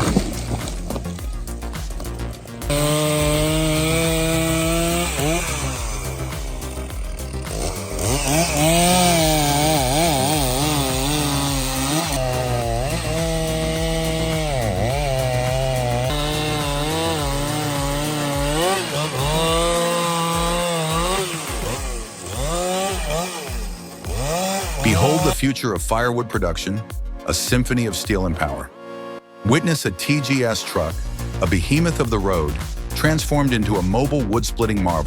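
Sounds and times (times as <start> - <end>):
chainsaw cutting wood: 0.0 - 25.4.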